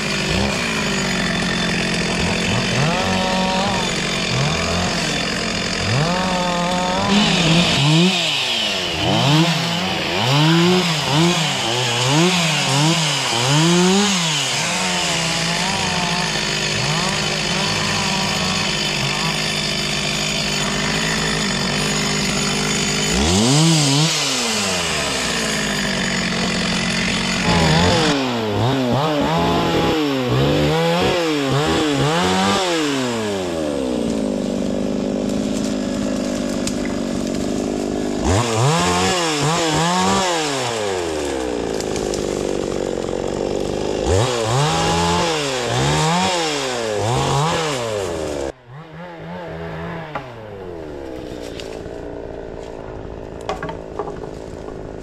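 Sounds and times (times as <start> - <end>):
chainsaw revving: 0.0 - 55.0.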